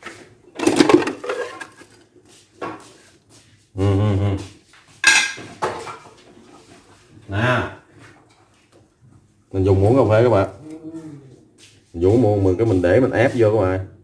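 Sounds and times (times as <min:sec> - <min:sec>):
low voice hum: 0:03.8 - 0:04.5
spoon clattering against dishes: 0:05.0 - 0:06.1.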